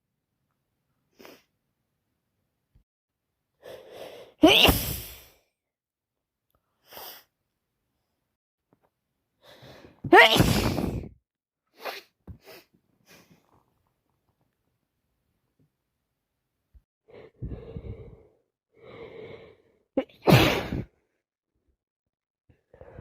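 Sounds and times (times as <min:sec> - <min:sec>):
faint sniffs: 0:01.1 - 0:01.5, 0:06.8 - 0:07.3, 0:11.8 - 0:13.6
woman sneezing: 0:04.4 - 0:05.3, 0:10.1 - 0:11.1, 0:20.0 - 0:20.9.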